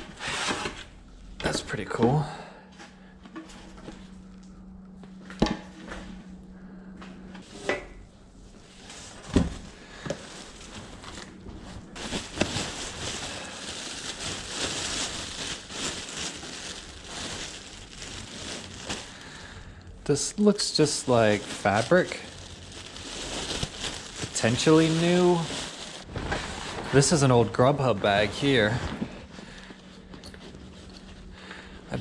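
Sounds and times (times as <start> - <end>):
bags rustling and crinkling: 7.4 - 32.0.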